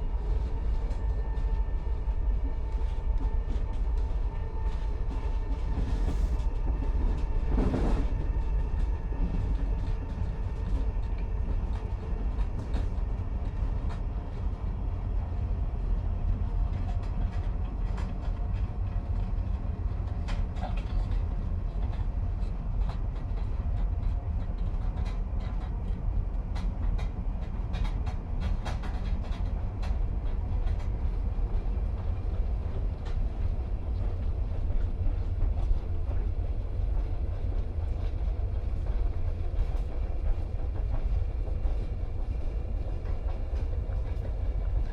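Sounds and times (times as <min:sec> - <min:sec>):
train rushing: 0:00.0 - 0:14.5
train rumble inside carriage: 0:00.0 - 0:44.9.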